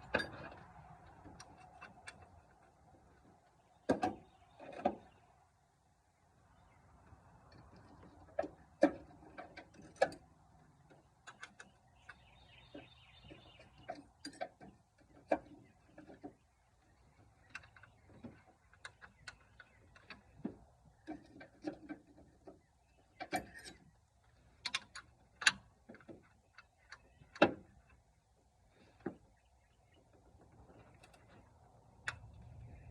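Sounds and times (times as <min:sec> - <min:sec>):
metal clicks and knocks: 0:00.0 - 0:05.1, 0:07.4 - 0:16.4, 0:17.1 - 0:28.0.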